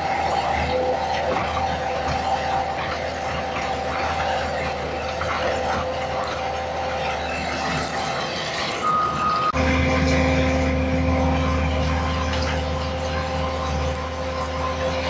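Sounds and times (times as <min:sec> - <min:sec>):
mechanical clatter and rattle: 0:00.0 - 0:08.8
brief steady whine: 0:00.0 - 0:15.0
skid steer engine running: 0:00.0 - 0:15.0.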